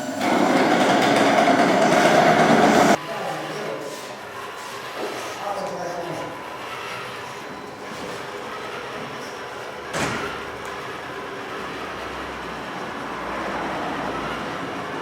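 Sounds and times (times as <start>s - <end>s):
model machines whirring and clattering: 0.0s - 3.0s.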